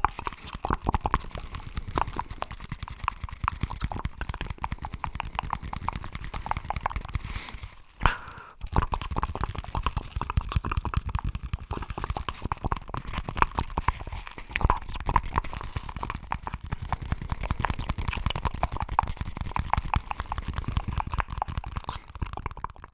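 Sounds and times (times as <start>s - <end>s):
wet mouth clicks: 0.0s - 22.9s.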